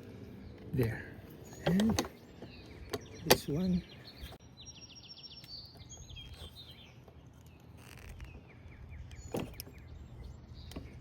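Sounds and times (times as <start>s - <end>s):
small bird singing high chirps: 0.2s - 11.0s.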